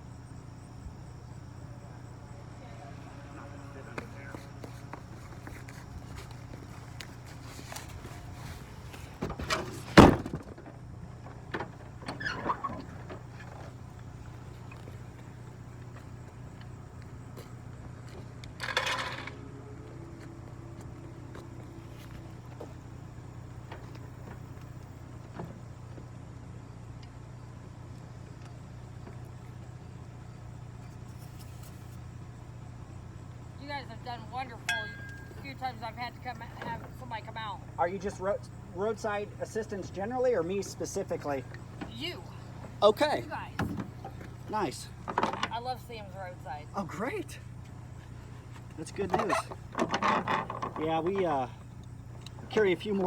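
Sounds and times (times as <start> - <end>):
steady low hum: 0.0 - 12.2, 12.8 - 53.0
tools clanking and knocking: 18.6 - 19.5, 34.6 - 35.6.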